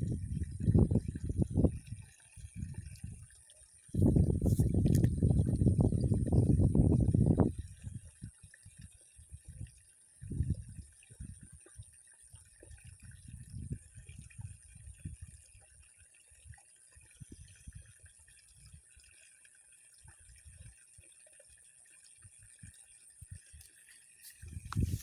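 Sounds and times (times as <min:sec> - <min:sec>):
faint water sounds: 0:00.0 - 0:25.0.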